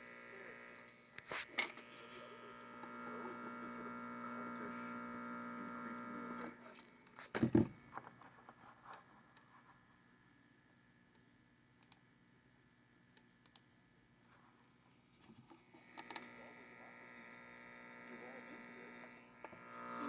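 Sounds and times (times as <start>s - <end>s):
buzzing hum with crackles: 0.0s - 8.0s, 15.8s - 20.0s
faint electrical hum: 0.0s - 20.0s.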